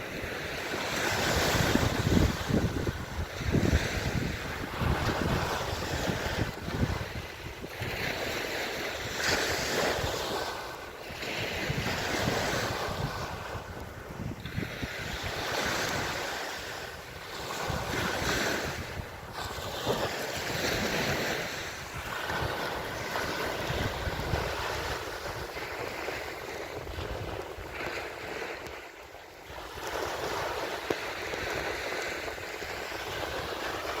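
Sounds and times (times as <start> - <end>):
sea waves washing ashore: 0.0 - 34.0
wind buffeting microphone: 0.0 - 34.0.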